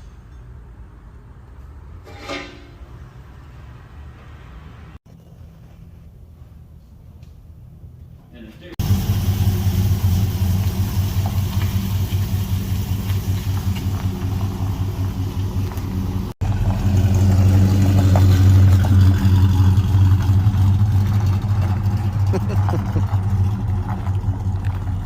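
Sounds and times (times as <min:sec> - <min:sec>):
engine idling: 0:08.8 - 0:25.0.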